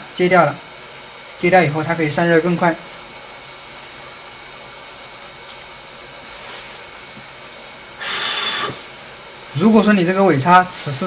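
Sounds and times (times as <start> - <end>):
hot air station hissing: 6.2 - 11.0.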